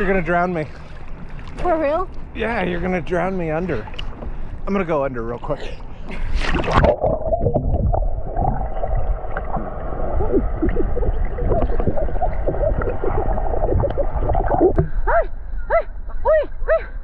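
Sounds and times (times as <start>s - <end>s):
underwater rumbling: 6.3s - 16.1s
water splash: 6.4s - 15.0s
underwater gurgling and bubbling: 6.5s - 15.0s.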